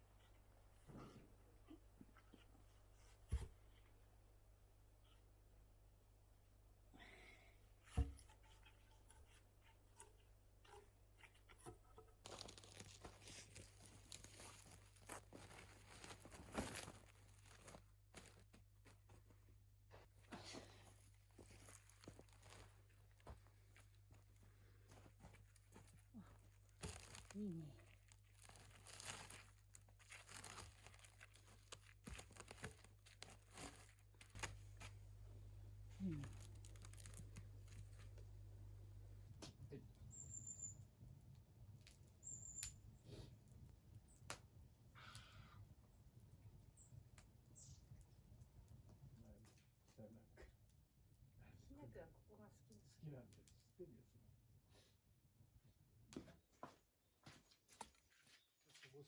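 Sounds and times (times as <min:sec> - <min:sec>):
crinkly rustling with clicks: 0:12.2 - 0:19.5, 0:20.9 - 0:24.2, 0:25.0 - 0:35.0, 0:36.2 - 0:38.2.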